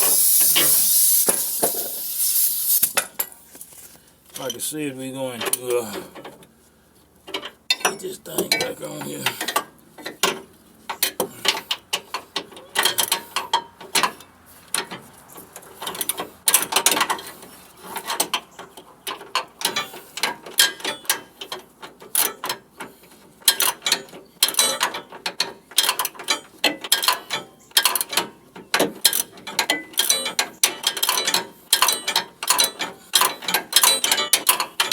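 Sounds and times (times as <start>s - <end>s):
ratchet wrench clicking: 0.0s - 3.0s.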